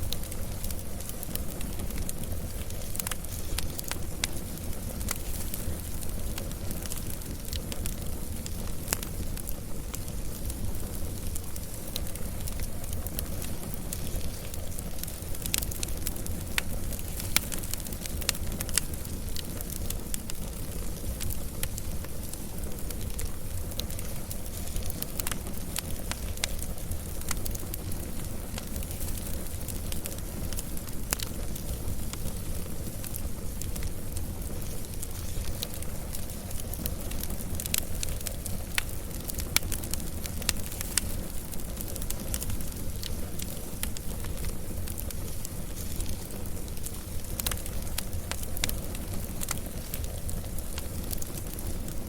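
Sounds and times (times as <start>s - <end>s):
wood fire crackling and popping: 0.0s - 52.0s.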